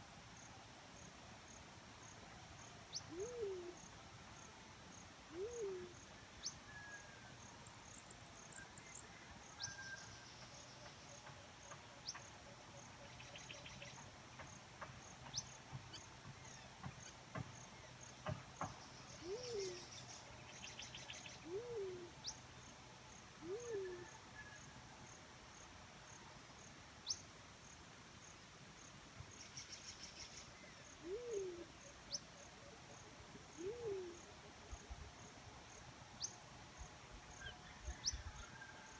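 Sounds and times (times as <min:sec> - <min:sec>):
dove hooting: 0:03.0 - 0:03.8, 0:05.3 - 0:06.0, 0:19.2 - 0:20.0, 0:21.3 - 0:22.3, 0:23.4 - 0:24.6, 0:31.0 - 0:31.9, 0:33.5 - 0:34.4.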